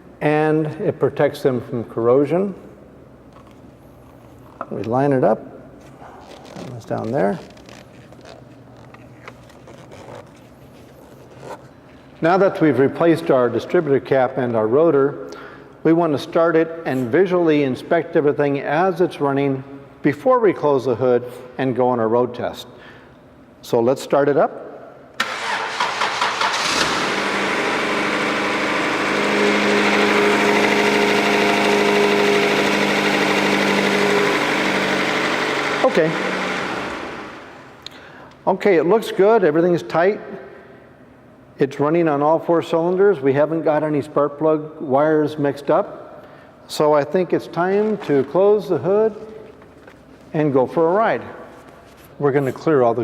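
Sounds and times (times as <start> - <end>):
car engine idling: 25.7 - 37.6.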